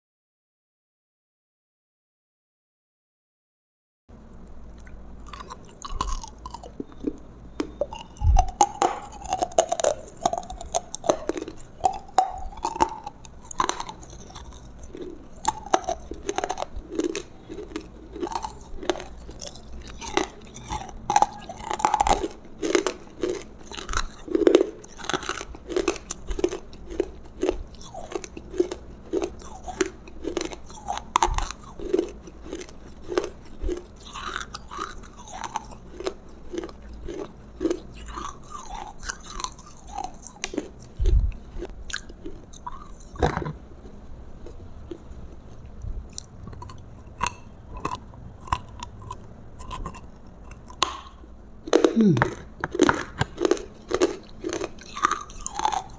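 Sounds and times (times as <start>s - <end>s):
chewing: 4.3s - 55.9s
crunchy bites: 4.8s - 55.9s.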